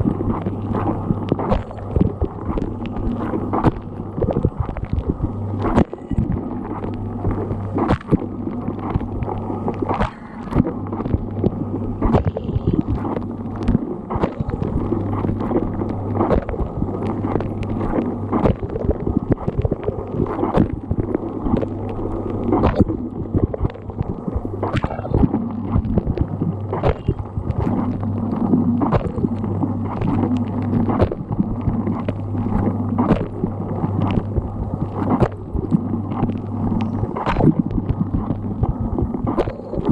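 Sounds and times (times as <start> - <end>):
water spraying and gurgling: 0.0 - 39.9.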